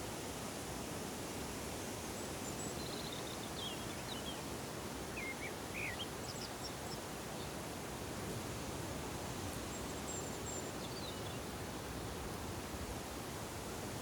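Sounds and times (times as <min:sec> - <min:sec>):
rustling hiss: 0:00.0 - 0:14.0
small birds chirping: 0:05.1 - 0:07.6, 0:09.3 - 0:11.5.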